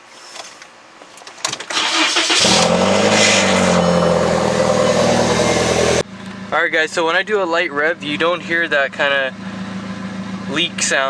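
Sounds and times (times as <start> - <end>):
starter motor cranking: 1.7 - 6.0
car engine idling: 1.8 - 11.0.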